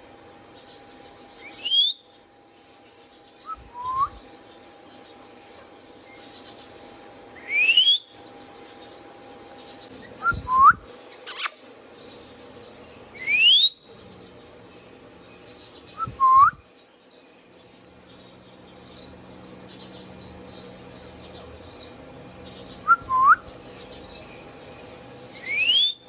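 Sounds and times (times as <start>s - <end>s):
parakeet whistled calls: 1.4s - 2.0s, 11.3s - 11.6s, 25.4s - 26.0s.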